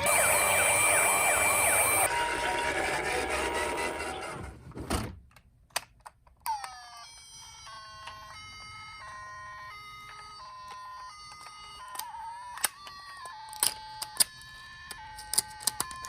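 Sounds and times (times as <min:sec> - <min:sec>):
loud jumble of sound: 0:00.0 - 0:02.6
toy electronic siren: 0:00.0 - 0:04.5, 0:06.4 - 0:16.0.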